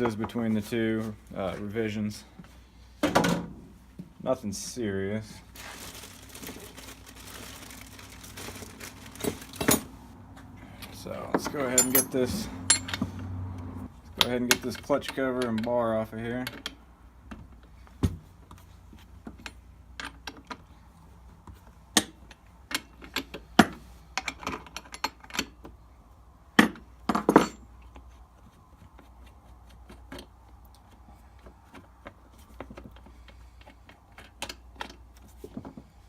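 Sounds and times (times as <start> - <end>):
metal tools clicking and knocking: 11.4 - 13.0, 24.2 - 25.7.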